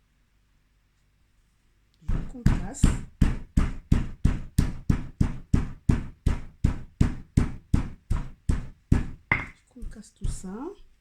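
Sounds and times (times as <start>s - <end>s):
stone pounding on stone: 2.1s - 10.6s.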